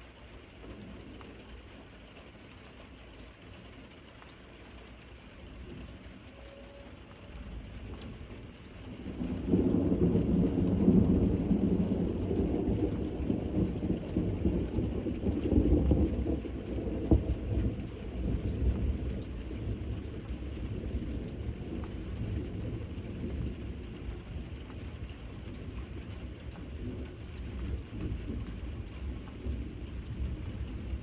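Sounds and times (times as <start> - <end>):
steady rain: 0.0 - 31.0
rolling thunder: 7.4 - 31.0.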